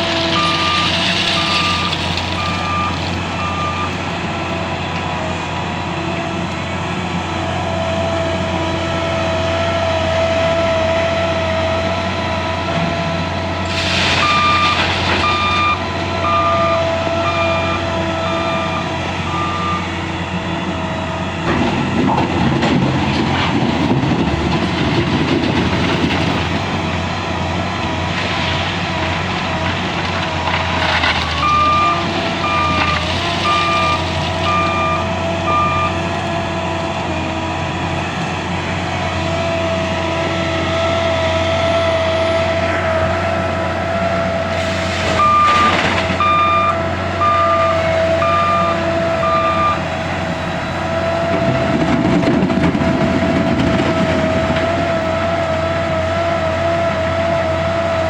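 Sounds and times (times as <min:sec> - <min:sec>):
loader diesel engine whining: 0:00.0 - 0:58.0
reversing alarm beeps: 0:00.3 - 0:04.0, 0:13.9 - 0:20.0, 0:31.3 - 0:36.0, 0:45.1 - 0:49.9.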